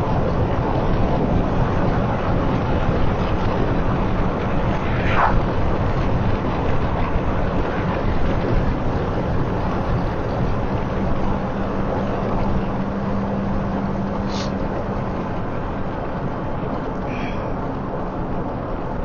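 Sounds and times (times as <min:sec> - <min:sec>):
car road and engine noise: 0:00.0 - 0:19.0
brief rising tone: 0:04.8 - 0:05.4.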